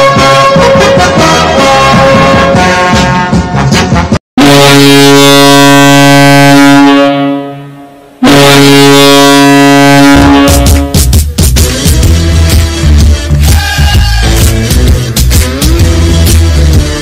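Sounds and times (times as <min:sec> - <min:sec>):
deep goal horn blasts: 0:00.0 - 0:03.7, 0:04.4 - 0:11.0
upbeat goal-song music: 0:00.0 - 0:04.6, 0:09.8 - 0:17.0.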